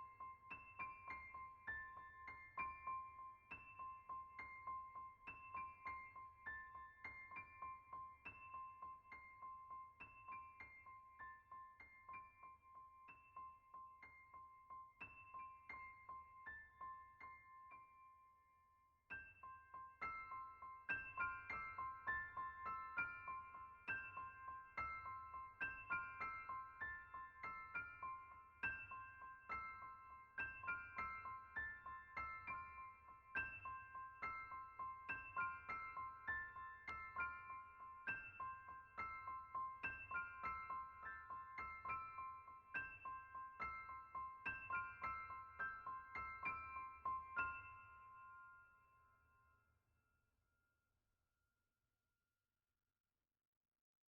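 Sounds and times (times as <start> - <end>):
gentle piano melody: 19.1 - 48.6.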